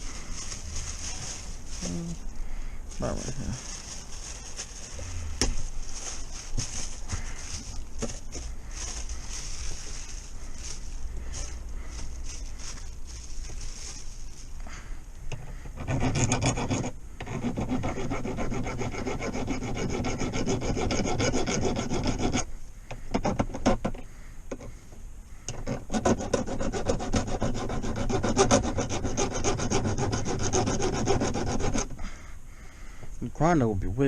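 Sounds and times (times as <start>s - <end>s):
hand file rasping on metal: 15.8s - 22.5s, 25.6s - 31.9s.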